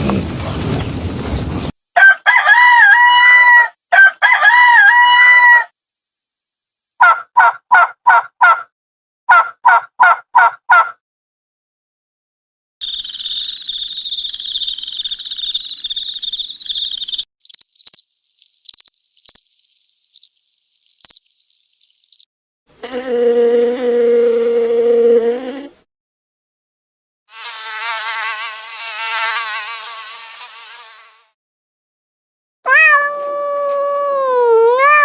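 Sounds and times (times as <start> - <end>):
short high chirps: 12.8 - 19.4
high pulsing insect buzz: 12.8 - 25.8, 27.4 - 31.3.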